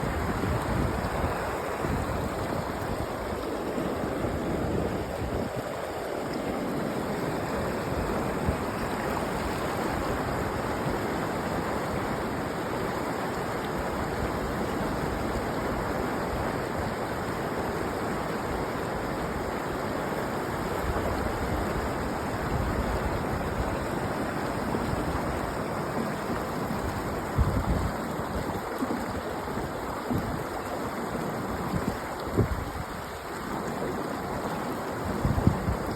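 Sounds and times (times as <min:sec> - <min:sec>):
wind gusts on microphone: 0:00.0 - 0:06.2, 0:26.1 - 0:30.6, 0:31.5 - 0:34.0, 0:35.0 - 0:35.9
water rushing over rocks: 0:00.0 - 0:35.9.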